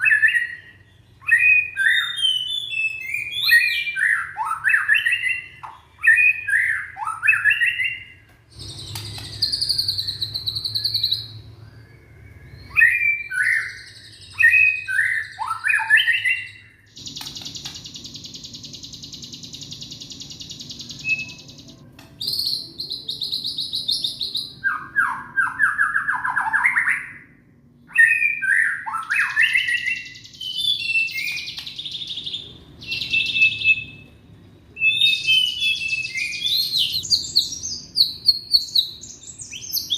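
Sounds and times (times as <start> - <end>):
bird singing whistled notes: 0.0 - 34.1, 34.7 - 39.9.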